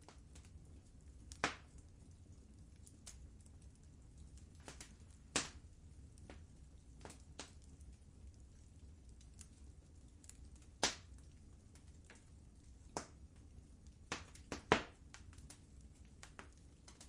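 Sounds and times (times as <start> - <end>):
low steady rumble: 0.0 - 17.0
wood fire crackling: 0.0 - 17.0.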